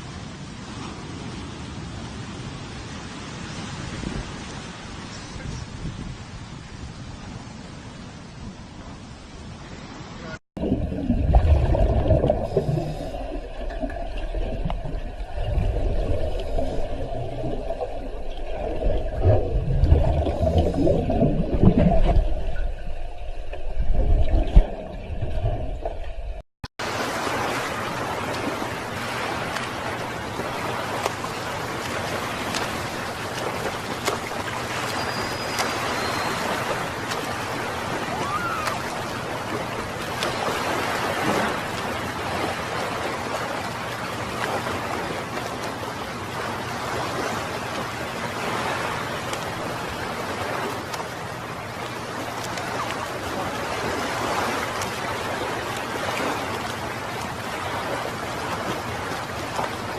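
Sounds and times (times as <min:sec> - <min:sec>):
water rumbling and churning: 0:00.0 - 0:59.9
steady hiss of water: 0:11.8 - 0:19.0, 0:26.8 - 0:59.9
faint high chirps: 0:34.9 - 0:36.6.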